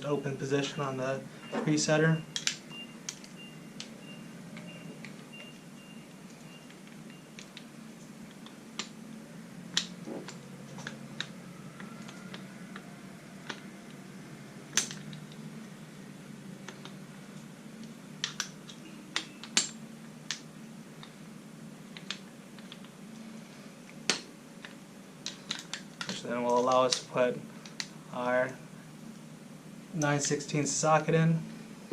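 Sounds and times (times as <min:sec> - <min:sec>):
steady low hum: 0:00.0 - 0:31.9.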